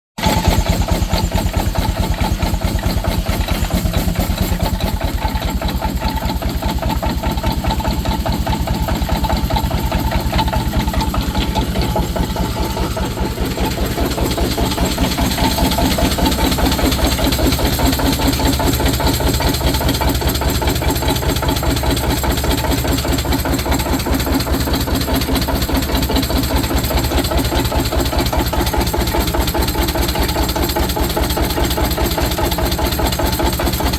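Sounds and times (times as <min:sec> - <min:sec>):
steam engine rapid beats: 0:00.2 - 0:33.9.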